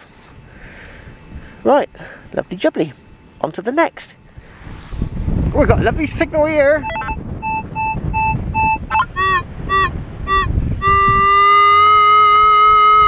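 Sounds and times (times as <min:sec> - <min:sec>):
wind rumble on microphone: 0:00.0 - 0:03.3, 0:04.2 - 0:13.0
metal detector beeps and tone: 0:06.7 - 0:11.6.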